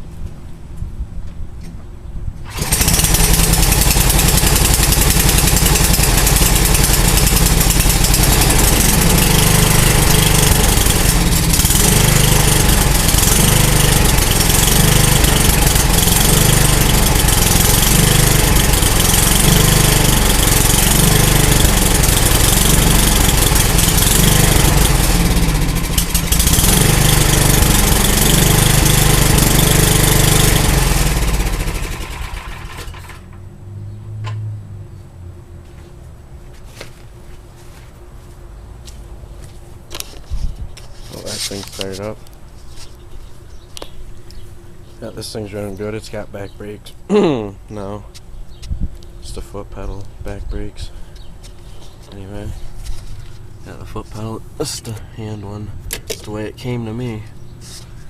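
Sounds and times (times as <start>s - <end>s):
small gasoline engine running: 2.4s - 33.4s.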